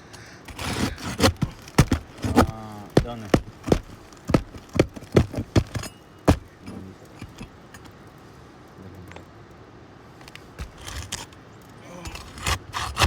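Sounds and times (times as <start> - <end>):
shuffling and scraping: 0.0 - 8.4, 10.2 - 13.0
sharp knocks: 0.5 - 6.6.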